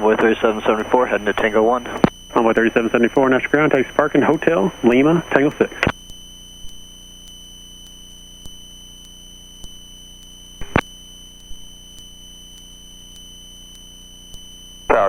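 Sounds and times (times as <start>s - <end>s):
high-pitched electronic whine: 0.0s - 15.0s
faint clicks: 5.8s - 14.6s
short radio blip: 10.6s - 10.9s.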